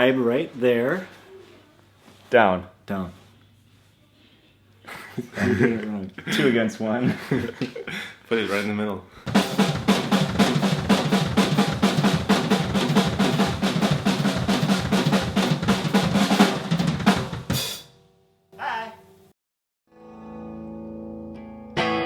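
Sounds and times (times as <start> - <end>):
cymbal crash: 9.3 - 18.0
snare and drum strokes: 9.3 - 18.0.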